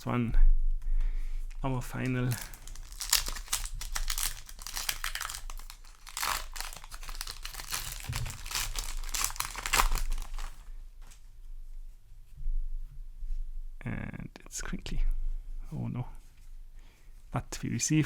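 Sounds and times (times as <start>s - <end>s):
foil wrapper crinkling and tearing: 1.8s - 10.7s.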